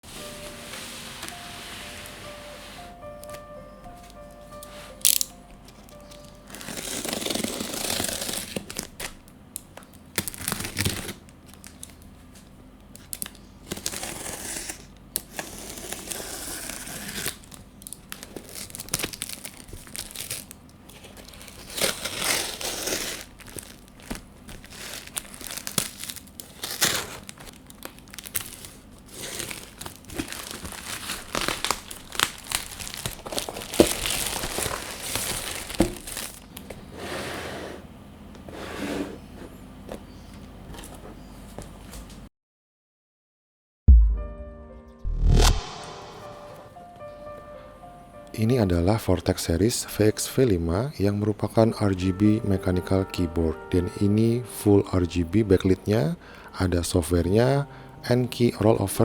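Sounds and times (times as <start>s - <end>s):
plastic crinkling and tearing: 4.6s - 36.7s.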